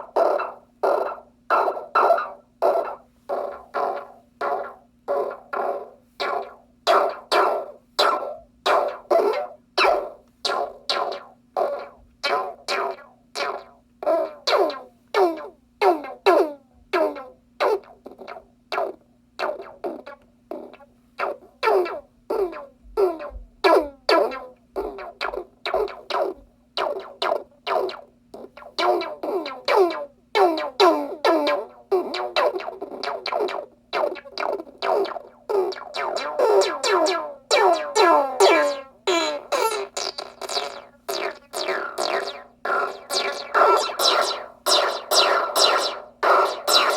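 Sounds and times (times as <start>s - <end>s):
synthesizer plucked notes: 35.0s - 46.9s
low synthesizer drone: 41.1s - 46.9s.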